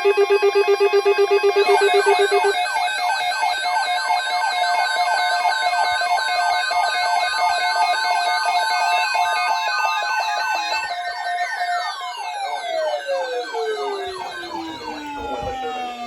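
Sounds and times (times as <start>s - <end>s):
fast high warble: 0.0s - 2.6s, 12.8s - 16.0s
steady alarm beeps: 0.0s - 3.4s, 12.6s - 16.0s
falling alarm sweeps: 0.0s - 4.4s, 7.6s - 16.0s.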